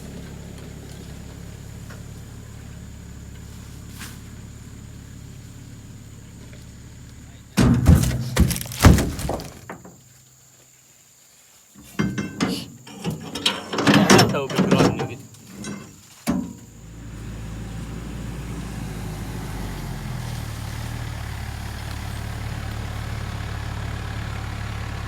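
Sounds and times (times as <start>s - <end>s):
low engine hum: 0.0s - 10.1s, 14.3s - 25.0s
loud thuds and clatter: 7.6s - 10.0s.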